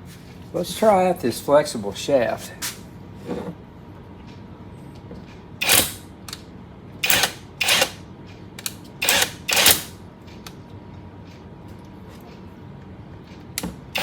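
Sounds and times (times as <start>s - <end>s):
impact wrench bursts: 5.6s - 6.0s, 7.0s - 8.0s, 9.0s - 9.9s.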